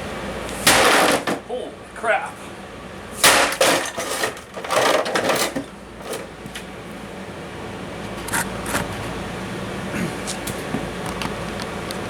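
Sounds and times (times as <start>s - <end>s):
air conditioner humming: 0.0s - 12.0s
plastic fan cracking and clattering: 3.2s - 6.7s, 10.3s - 12.0s.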